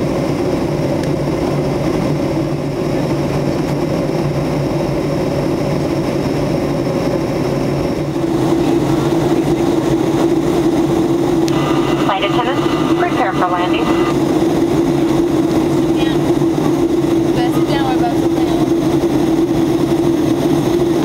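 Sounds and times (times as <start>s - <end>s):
airliner cabin engine rush: 0.0s - 21.0s
low drone: 8.0s - 21.0s.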